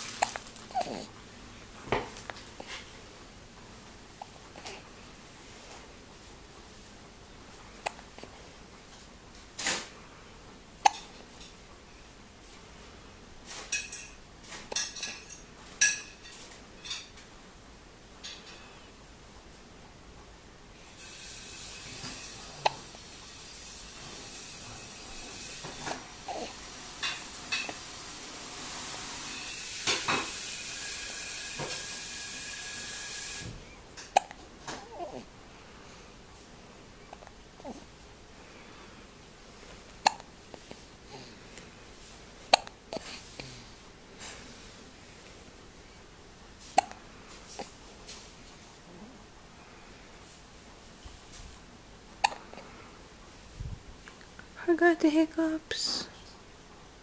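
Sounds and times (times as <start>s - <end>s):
steady hiss: 0.0s - 0.8s, 20.7s - 34.2s
baby hiccuping: 0.1s - 1.1s, 10.8s - 11.2s, 34.1s - 35.3s, 40.0s - 40.3s, 42.4s - 43.2s, 46.6s - 47.8s, 52.2s - 52.6s.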